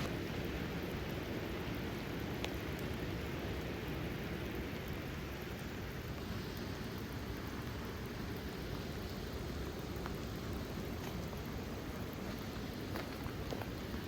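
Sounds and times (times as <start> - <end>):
rain on a vehicle: 0.0 - 14.0
faint tick: 2.4 - 2.9.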